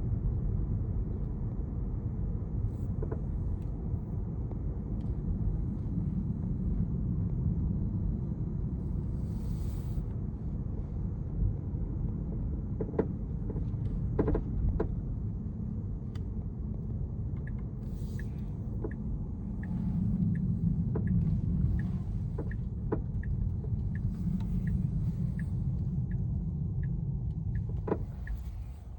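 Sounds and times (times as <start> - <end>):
low road rumble: 0.0 - 28.9
light regular tick: 16.1 - 16.5, 17.3 - 28.9.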